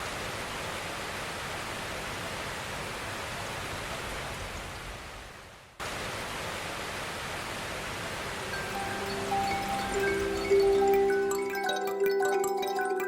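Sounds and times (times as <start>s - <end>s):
waterfall rushing: 5.8s - 13.0s.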